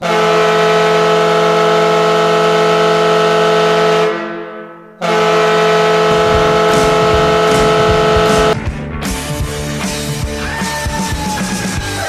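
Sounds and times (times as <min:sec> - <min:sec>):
goal horn blast: 0:05.0 - 0:08.6
drum beat: 0:06.1 - 0:08.9.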